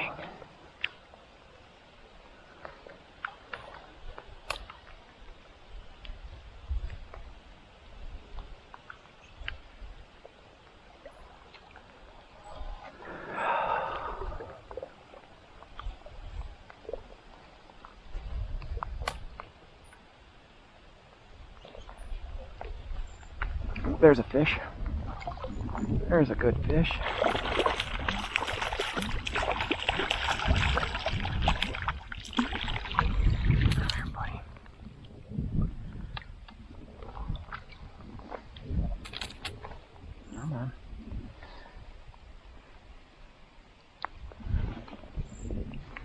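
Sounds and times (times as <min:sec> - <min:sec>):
river water splashing and gurgling: 0:00.0 - 0:46.0
small sharp splashes and knocks: 0:02.6 - 0:05.3, 0:17.8 - 0:20.1, 0:26.9 - 0:34.6
person breathing out hard: 0:13.0 - 0:14.6.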